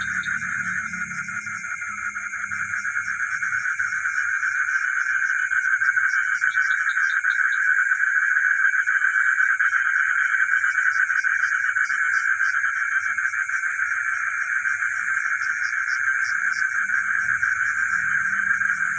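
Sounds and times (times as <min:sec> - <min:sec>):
higher chirps: 0:00.0 - 0:04.0
frogs calling in chorus: 0:00.0 - 0:18.9
high-pitched insect-like trill: 0:15.6 - 0:18.9.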